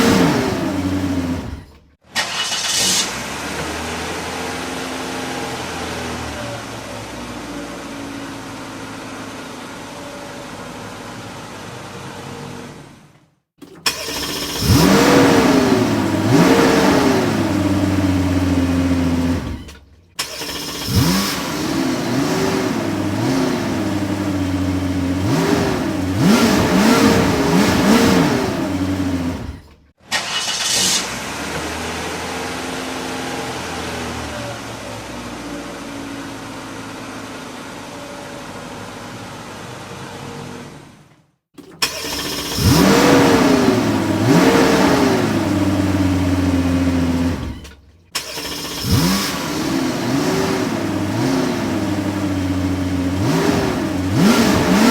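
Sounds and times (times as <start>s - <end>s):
car engine idling: 0.0s - 2.0s, 13.6s - 30.6s, 41.6s - 54.9s
idling engine blipped up in revs: 0.0s - 12.9s, 13.9s - 41.0s, 41.8s - 54.9s
car engine starting and revving: 0.0s - 54.9s.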